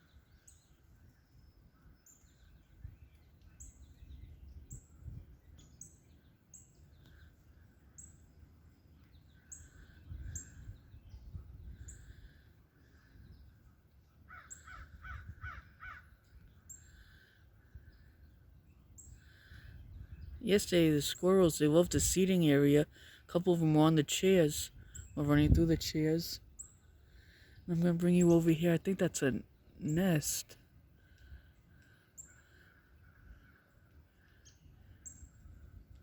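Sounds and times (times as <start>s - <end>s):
harsh bird calls: 9.2s - 18.4s.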